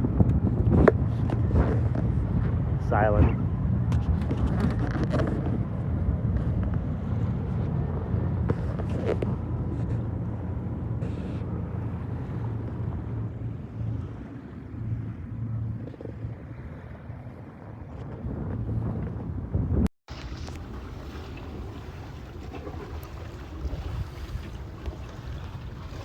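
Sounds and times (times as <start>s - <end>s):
wind buffeting microphone: 0.0s - 26.0s.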